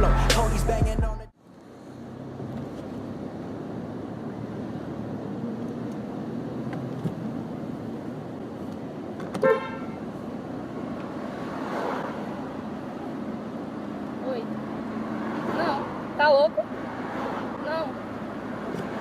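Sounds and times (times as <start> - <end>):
street traffic noise: 0.0 - 19.0
car horn honk: 9.4 - 10.1.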